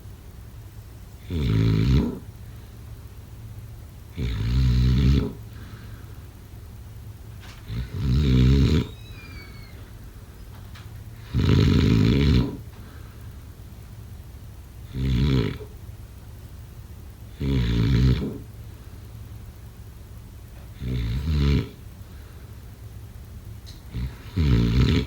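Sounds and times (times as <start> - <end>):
loud snores: 1.2 - 2.3, 4.1 - 5.4, 7.7 - 9.7, 11.2 - 12.6, 14.9 - 15.7, 17.3 - 18.5, 20.8 - 21.8, 23.9 - 25.0.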